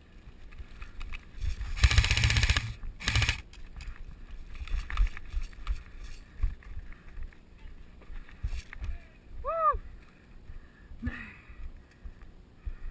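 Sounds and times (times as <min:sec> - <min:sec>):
airsoft gun firing bursts: 0:01.7 - 0:03.5.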